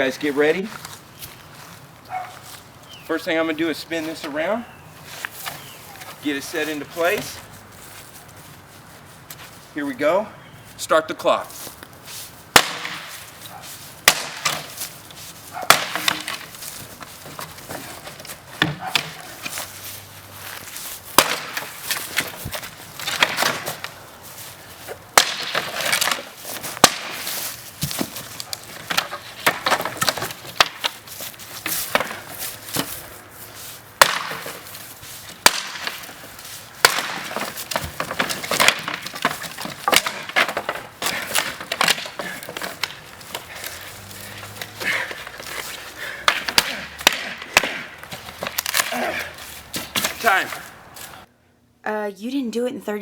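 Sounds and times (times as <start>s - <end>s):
wood cracking and splintering: 12.5s - 24.5s, 25.1s - 33.0s, 34.0s - 51.2s
sledgehammer smashing wooden pallet: 12.6s - 13.2s, 15.6s - 19.6s, 21.1s - 23.9s, 25.2s - 31.0s, 34.0s - 50.7s.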